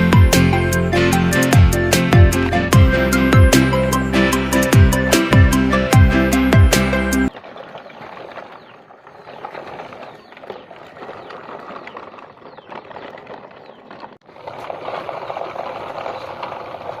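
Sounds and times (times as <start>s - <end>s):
truck engine running: 0.0s - 7.3s.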